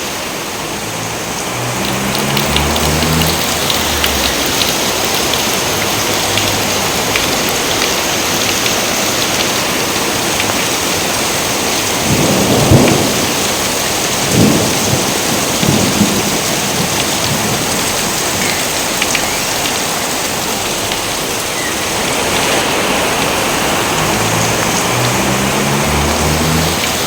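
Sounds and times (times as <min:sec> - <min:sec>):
heavy rain: 0:00.0 - 0:27.0
rolling thunder: 0:12.0 - 0:18.4.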